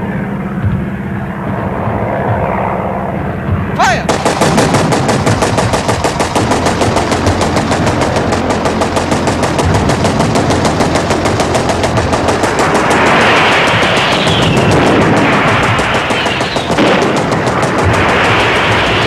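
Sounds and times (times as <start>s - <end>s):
low rumble: 0.0s - 19.0s
machine gun firing rapid bursts: 4.1s - 19.0s
rushing noise: 12.4s - 19.0s.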